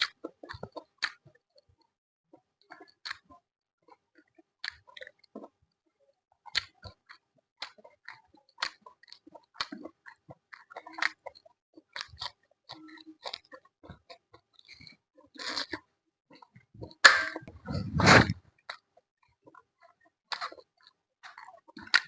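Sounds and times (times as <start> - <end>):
chewing and biting food: 6.5 - 16.6.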